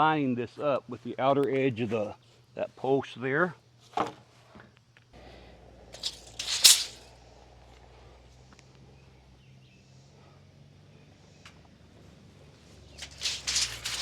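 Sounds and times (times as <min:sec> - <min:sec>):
faint outdoor background: 0:03.7 - 0:14.0.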